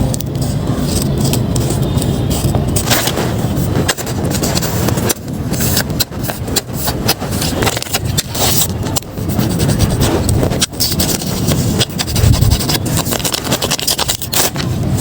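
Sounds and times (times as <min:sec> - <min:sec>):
paper packets crinkling: 0:09.6 - 0:14.7.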